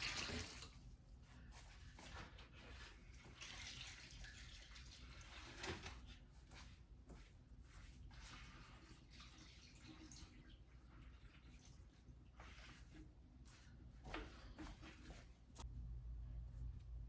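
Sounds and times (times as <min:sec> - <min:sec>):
tap water splashing into sink: 0:00.0 - 0:00.8.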